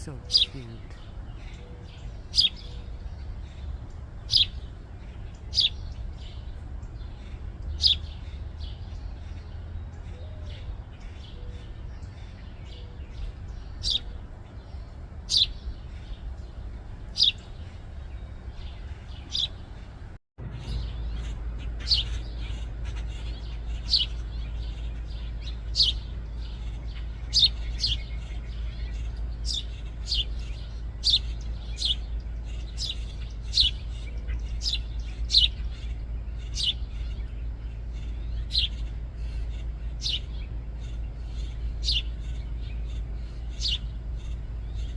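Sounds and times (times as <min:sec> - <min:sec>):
sparrows chirping: 0:00.0 - 0:44.9
steady low rumble: 0:00.0 - 0:44.9.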